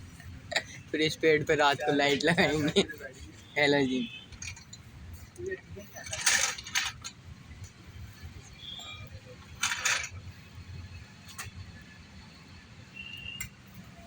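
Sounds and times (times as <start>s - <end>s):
metal parts clinking: 4.3s - 4.8s, 6.0s - 7.2s, 9.6s - 10.2s.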